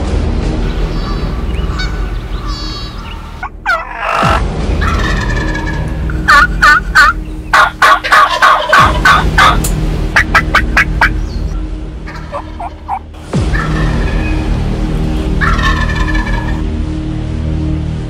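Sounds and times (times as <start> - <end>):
turkey gobbling: 1.1 - 11.3, 12.1 - 14.3, 15.4 - 16.6.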